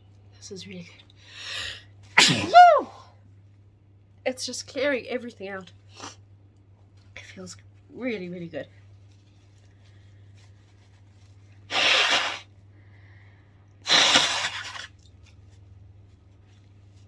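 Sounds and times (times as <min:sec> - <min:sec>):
woman sneezing: 0:02.2 - 0:03.0, 0:11.7 - 0:12.4, 0:13.9 - 0:14.9.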